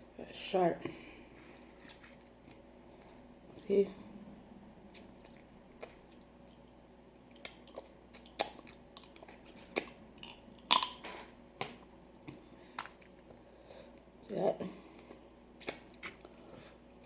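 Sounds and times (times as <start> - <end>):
chewing: 4.9 - 11.3.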